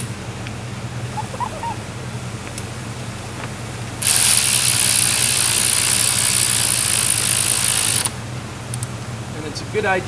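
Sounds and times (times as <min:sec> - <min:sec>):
power ratchet whirring: 0:04.0 - 0:08.9.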